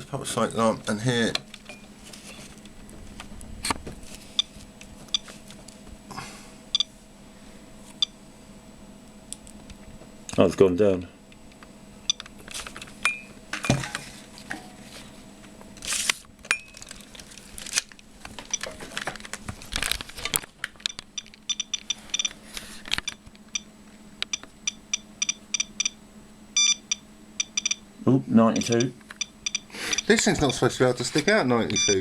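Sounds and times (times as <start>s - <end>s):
radiation meter chirping: 0.0s - 3.4s, 4.1s - 5.9s, 6.6s - 7.0s, 7.9s - 8.3s, 9.0s - 13.9s, 18.3s - 18.9s, 20.8s - 32.0s
rustling and handling: 0.9s - 6.1s, 12.3s - 23.4s.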